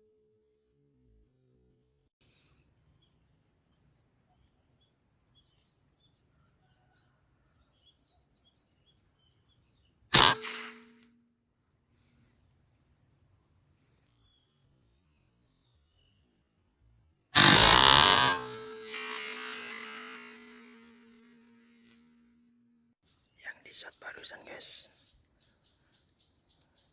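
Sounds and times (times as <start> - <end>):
air rifle shot: 10.2 - 11.0, 17.4 - 21.0
high-pitched insect drone: 10.2 - 11.0, 17.4 - 22.1.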